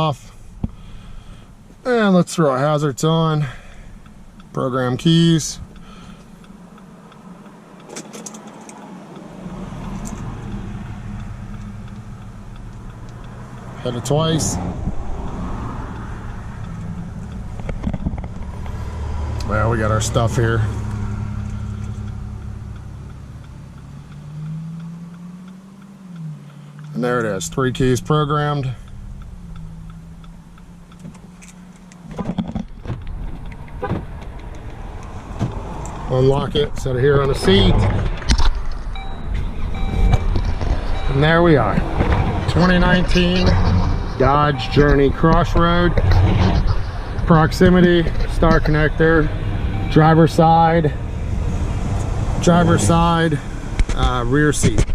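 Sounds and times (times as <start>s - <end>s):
low vehicle rumble: 0.0s - 54.9s
hazard light flasher ticking: 3.0s - 32.1s.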